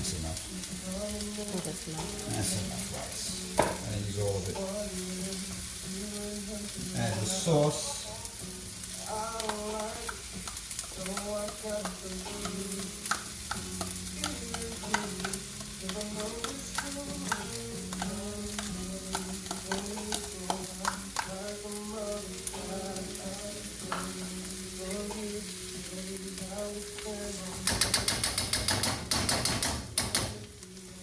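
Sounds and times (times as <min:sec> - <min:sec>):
rice sizzling in a hot pan: 0:00.0 - 0:31.0
utensil clicking against pan: 0:09.0 - 0:21.8, 0:27.0 - 0:30.5.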